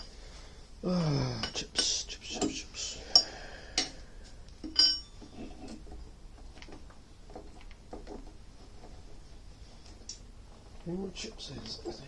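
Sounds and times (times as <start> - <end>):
metal tools clicking and knocking: 1.4 - 4.0, 4.6 - 6.0
sharp metallic clink: 4.8 - 5.2.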